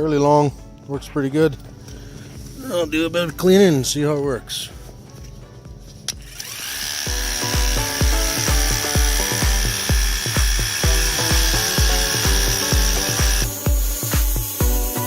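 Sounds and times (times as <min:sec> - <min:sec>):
background music with kick drum: 0:00.0 - 0:15.0
pressure washer whining and hissing: 0:06.2 - 0:15.0.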